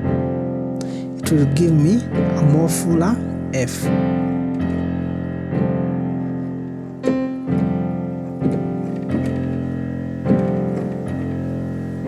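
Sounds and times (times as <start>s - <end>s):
piano chord: 0.0s - 12.0s.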